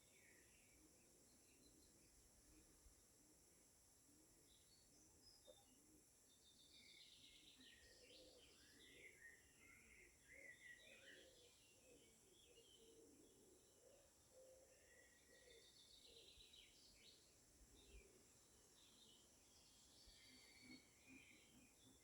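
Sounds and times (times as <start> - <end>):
small birds chirping: 6.3 - 22.0.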